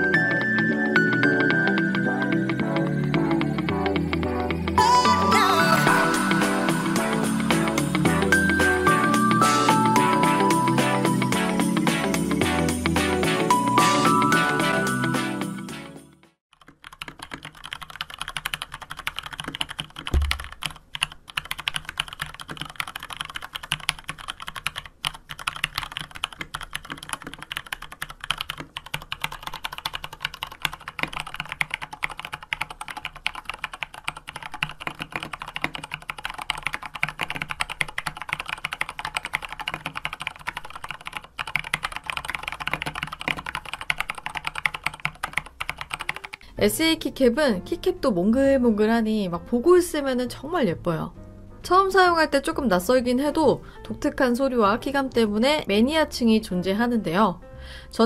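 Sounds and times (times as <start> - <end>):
fast mechanical keyboard typing: 16.5 - 46.4.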